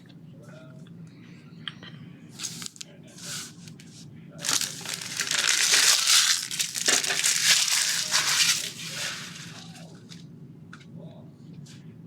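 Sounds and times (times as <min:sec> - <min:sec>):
plastic wrappers crinkling: 0:02.4 - 0:03.6, 0:04.4 - 0:10.2.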